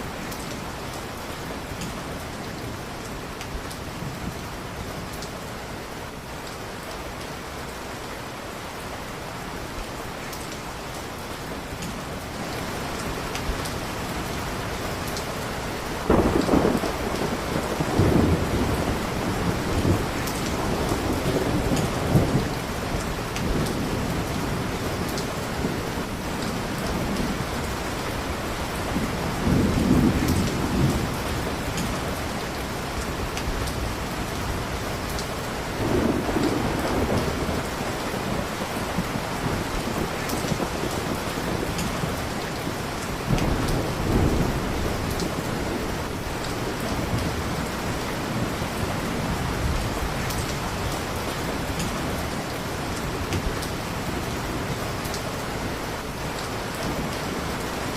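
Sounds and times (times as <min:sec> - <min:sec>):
heavy rainfall: 0:00.0 - 0:57.9
low thunder rolling: 0:16.0 - 0:22.6, 0:35.8 - 0:42.2.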